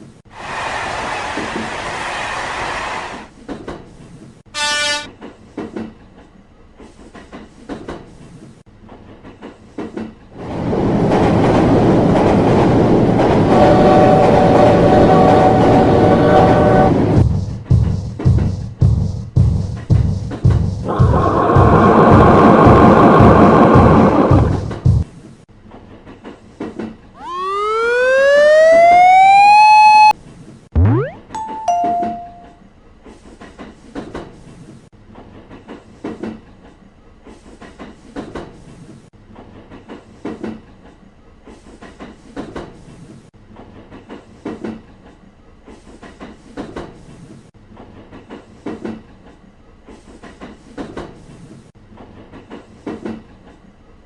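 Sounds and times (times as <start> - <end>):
tone rising in pitch: 27.2 - 30.2, 30.8 - 32.5
two-note ding-dong chime: 30.8 - 32.6
train wheels clattering over rail joints: 39.3 - 42.9, 43.5 - 53.7.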